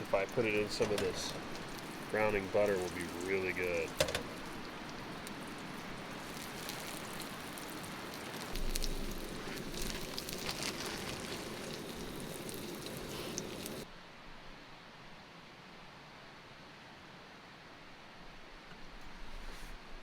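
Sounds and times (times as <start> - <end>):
butter sizzling in a frying pan: 0.0 - 13.8.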